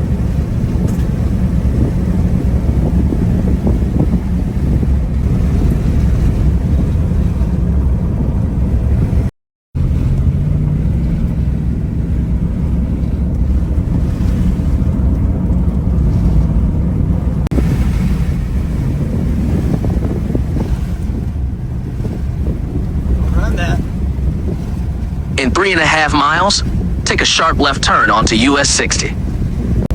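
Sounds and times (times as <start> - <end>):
wind and road noise rumble: 0.0 - 29.9.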